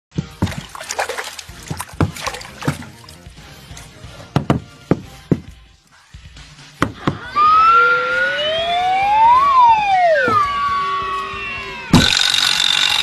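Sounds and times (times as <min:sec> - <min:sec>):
cartoon hits: 0:12.0 - 0:13.0.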